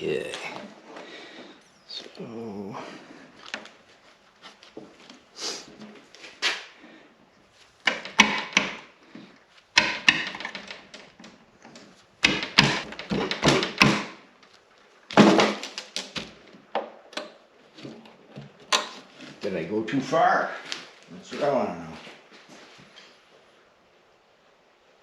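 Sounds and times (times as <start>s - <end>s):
tools and metal parts clattering: 9.8s - 13.9s.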